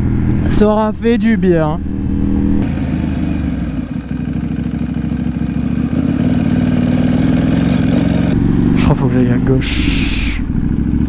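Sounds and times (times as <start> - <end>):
wind hiss: 2.6 - 8.4
motorcycle engine running: 2.6 - 9.4, 10.1 - 11.0.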